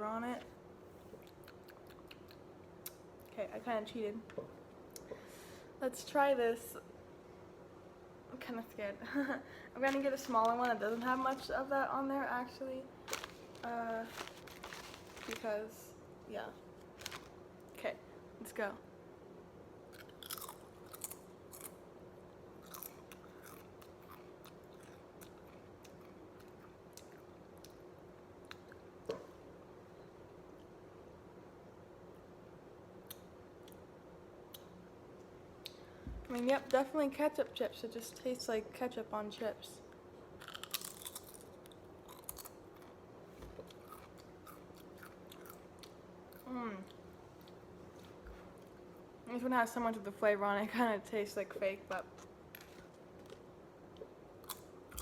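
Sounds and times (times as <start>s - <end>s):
potato chip crunching: 13.0s - 15.6s, 16.8s - 17.4s, 20.0s - 21.8s, 22.6s - 27.8s, 40.4s - 42.9s, 54.4s - 55.0s.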